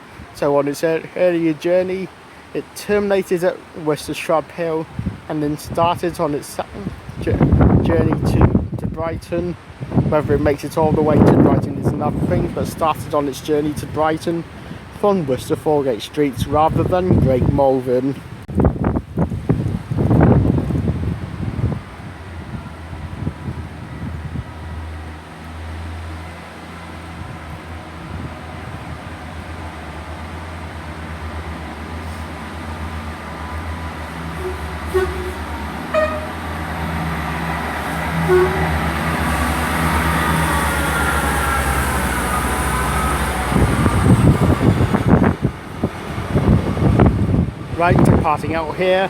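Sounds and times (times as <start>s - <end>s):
diesel train engines running: 0.0s - 8.8s, 9.6s - 49.0s
wind buffeting microphone: 0.0s - 49.0s
short tones: 34.0s - 41.0s.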